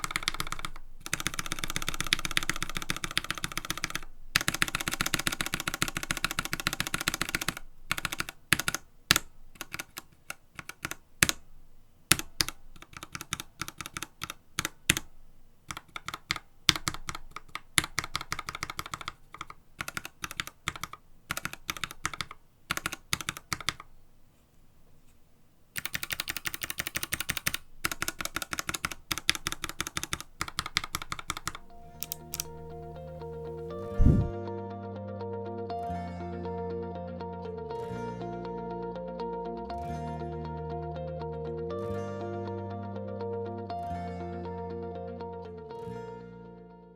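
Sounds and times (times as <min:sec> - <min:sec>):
mechanical keyboard typing: 0:00.0 - 0:11.5, 0:12.1 - 0:15.1, 0:15.7 - 0:23.9, 0:25.8 - 0:34.3
background music: 0:31.4 - 0:46.9.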